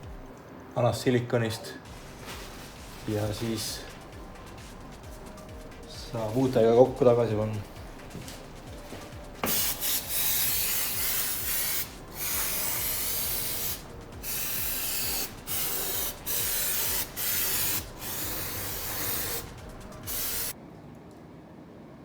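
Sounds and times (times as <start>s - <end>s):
pressurised spray hissing: 8.8s - 20.6s.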